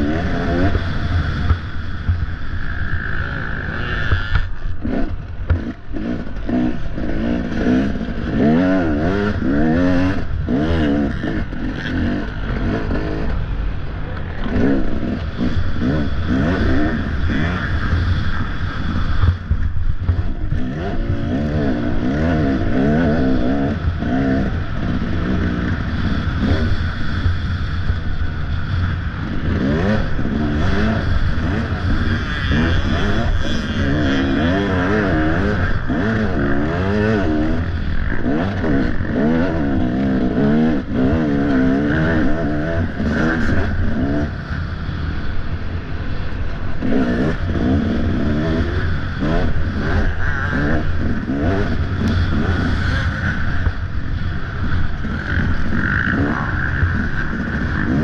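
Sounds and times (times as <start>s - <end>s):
dirt bike engine revving: 0.0s - 58.0s
steady low rumble: 0.0s - 58.0s.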